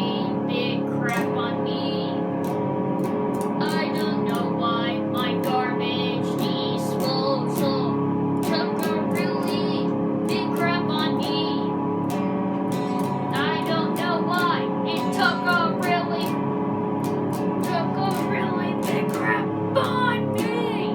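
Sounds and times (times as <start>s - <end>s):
boy singing: 0.0s - 2.1s, 3.6s - 11.7s, 13.3s - 16.4s, 17.6s - 20.9s
backing music with held chords: 0.0s - 20.9s.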